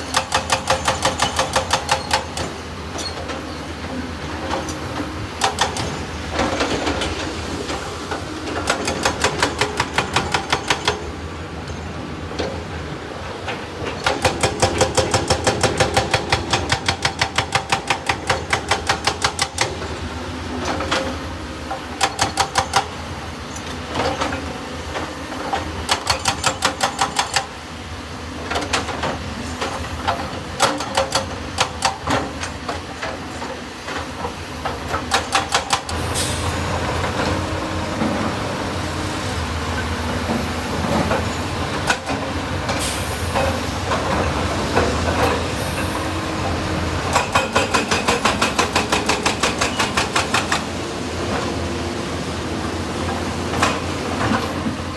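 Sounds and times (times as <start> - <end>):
excavator engine drone: 35.9 - 54.9.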